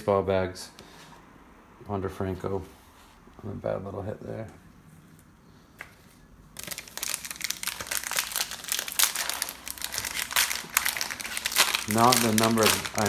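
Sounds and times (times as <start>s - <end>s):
plastic wrapper crinkling: 6.5s - 13.0s.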